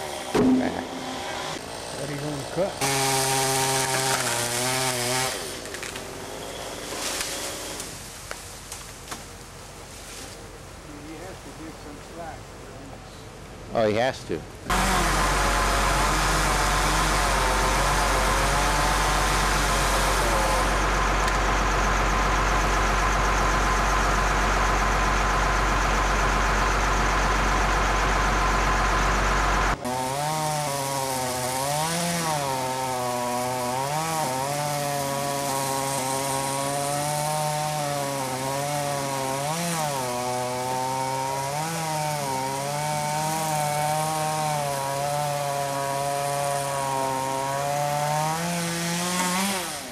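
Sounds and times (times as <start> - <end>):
two-stroke chainsaw cutting wood: 0.0 - 7.9, 14.7 - 23.4, 29.0 - 49.9.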